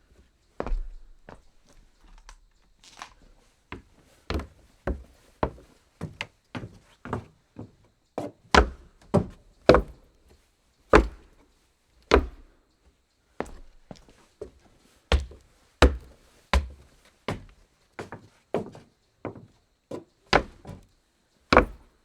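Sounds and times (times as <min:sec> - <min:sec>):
footsteps on wooden floor: 0:03.7 - 0:07.9, 0:11.0 - 0:11.3, 0:12.1 - 0:12.5, 0:13.4 - 0:20.9.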